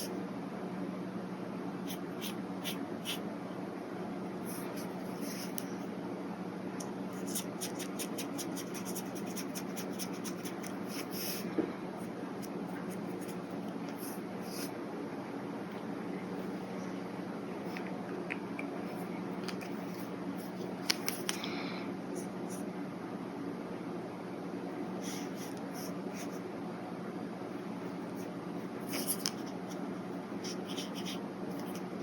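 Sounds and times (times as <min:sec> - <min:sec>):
brush pen scratching on paper: 0:01.9 - 0:03.2, 0:04.4 - 0:05.6, 0:07.2 - 0:11.4, 0:12.7 - 0:14.7, 0:25.0 - 0:26.4, 0:28.0 - 0:31.9.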